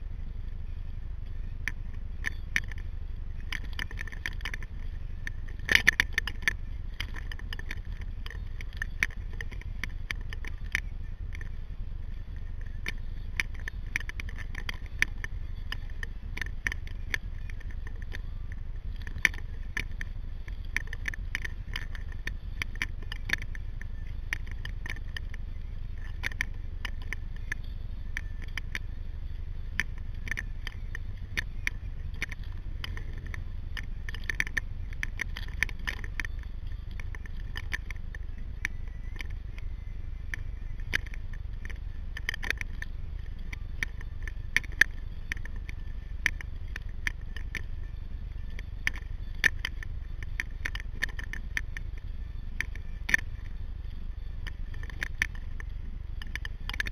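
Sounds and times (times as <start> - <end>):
low rumble: 0.0 - 56.9.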